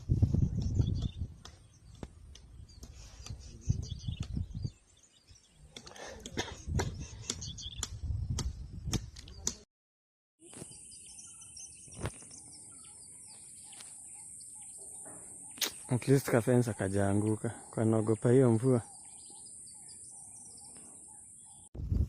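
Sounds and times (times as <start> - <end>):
birds chirping faintly: 0.4 - 9.6, 10.4 - 21.7.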